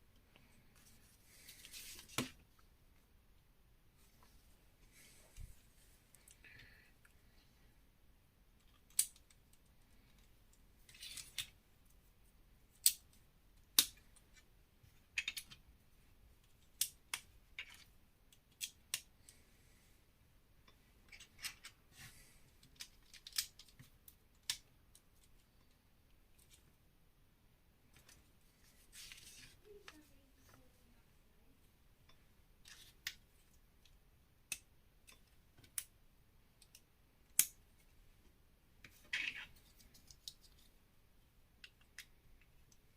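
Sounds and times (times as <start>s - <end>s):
plastic bricks clicking together: 15.2s - 15.6s.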